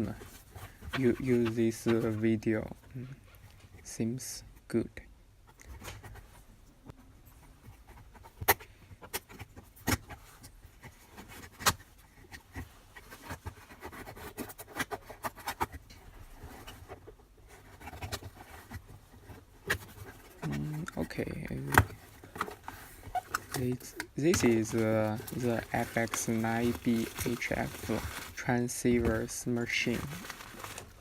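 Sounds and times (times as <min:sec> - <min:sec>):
packaging handling noise: 0:08.2 - 0:31.0
packaging clicks and knocks: 0:21.6 - 0:28.4, 0:29.0 - 0:31.0.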